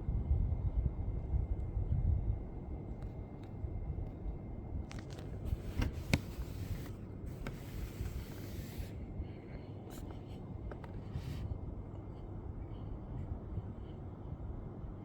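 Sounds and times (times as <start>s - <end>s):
steady low rumble: 0.0s - 15.0s
rubbing rustling noise: 4.9s - 8.9s.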